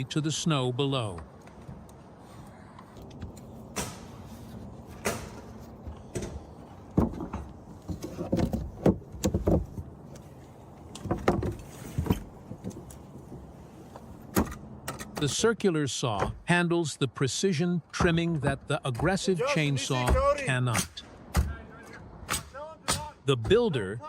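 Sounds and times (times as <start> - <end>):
knocks and thumps of handling: 4.9 - 9.9, 10.9 - 15.3.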